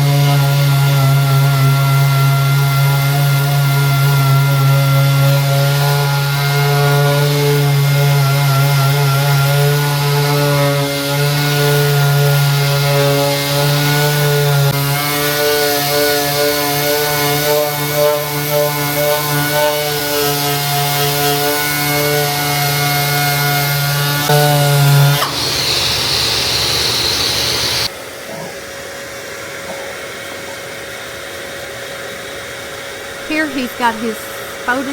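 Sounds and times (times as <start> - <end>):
power sander motor hum: 25.3 - 27.9.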